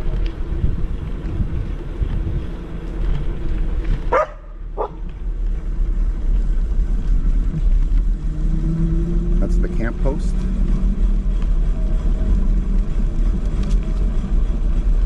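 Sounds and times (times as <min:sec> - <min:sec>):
wind buffeting microphone: 0:00.0 - 0:09.5.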